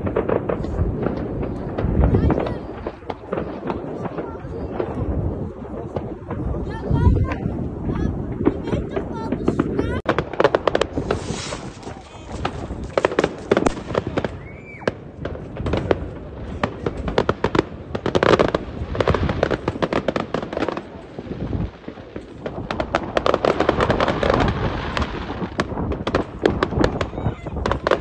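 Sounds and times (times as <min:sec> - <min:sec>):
fireworks banging and crackling: 0:00.0 - 0:28.0
firework whistle: 0:11.0 - 0:12.9, 0:13.6 - 0:15.0.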